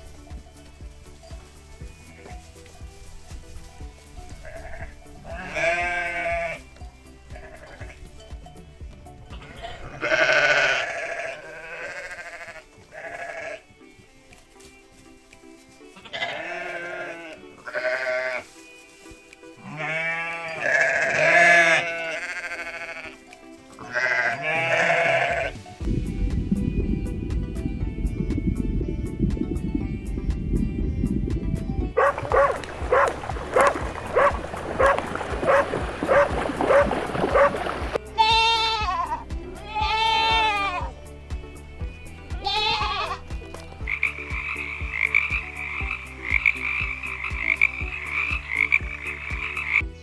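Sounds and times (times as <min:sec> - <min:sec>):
soft background music: 0:00.0 - 0:50.0
livestock bleating: 0:04.3 - 0:08.2, 0:09.3 - 0:13.8, 0:16.0 - 0:18.5, 0:19.6 - 0:25.6, 0:37.3 - 0:41.0, 0:42.1 - 0:50.0
dog barking: 0:32.0 - 0:37.6.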